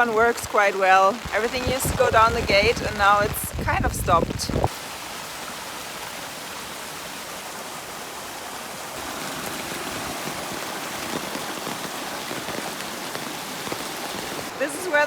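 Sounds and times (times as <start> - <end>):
heavy rain pouring: 0.0 - 15.0
running water rushing: 0.0 - 15.0.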